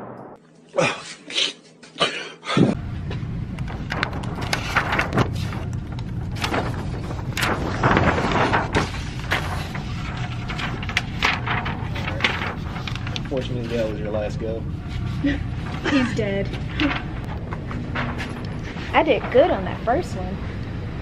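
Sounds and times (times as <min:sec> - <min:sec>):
steady low rumble: 0:02.7 - 0:21.0.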